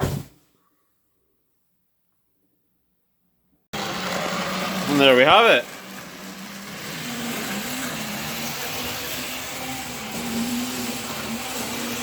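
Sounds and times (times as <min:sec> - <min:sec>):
model train motor humming: 0:03.8 - 0:12.0.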